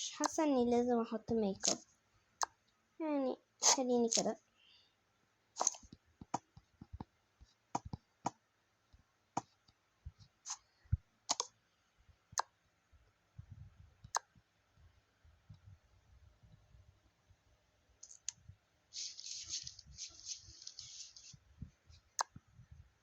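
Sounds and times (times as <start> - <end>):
soft low rustling: 18.0 - 23.0.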